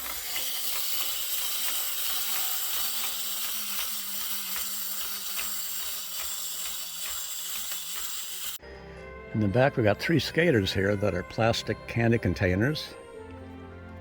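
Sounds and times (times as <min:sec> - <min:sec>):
clockwork motor whirring: 0:00.0 - 0:08.6.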